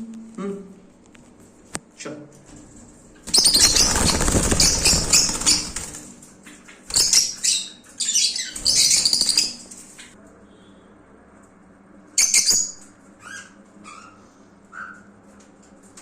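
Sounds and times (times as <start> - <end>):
birds flapping wings: 3.2 - 7.0
shrill bird chirps: 3.3 - 5.8, 6.9 - 10.2, 12.2 - 15.1.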